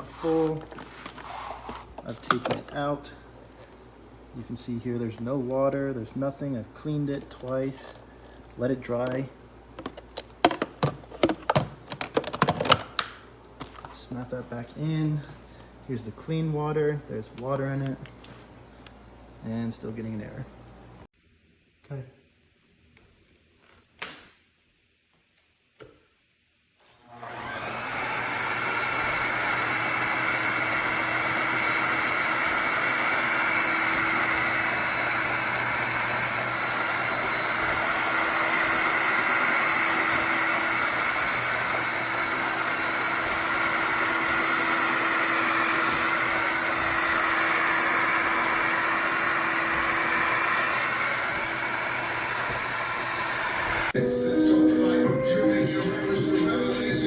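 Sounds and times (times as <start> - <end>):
vacuum motor whining: 26.8 - 54.0.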